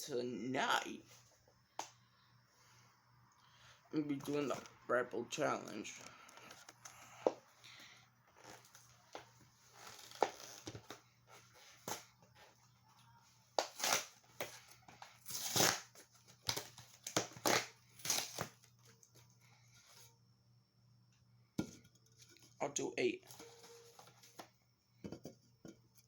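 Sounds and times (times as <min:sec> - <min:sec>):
rustling and crinkling handling noises: 0:23.2 - 0:24.6.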